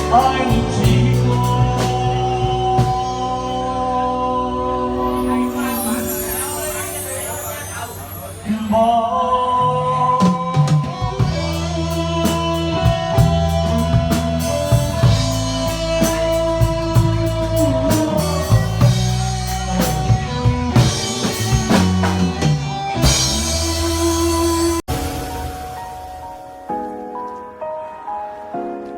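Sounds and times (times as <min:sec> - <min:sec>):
pop ballad with band: 0:00.0 - 0:27.6.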